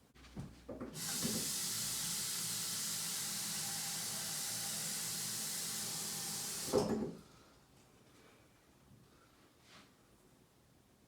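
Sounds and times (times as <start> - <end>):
tap water filling saucepan: 0.9 - 7.2.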